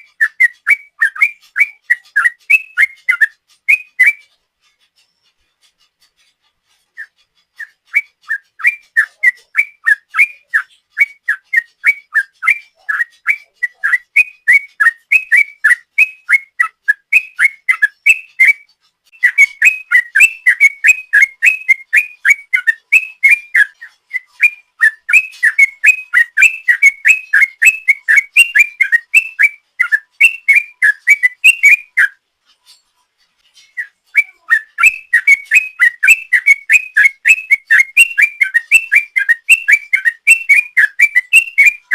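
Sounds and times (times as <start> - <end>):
bird singing whistled notes: 0.0 - 41.9.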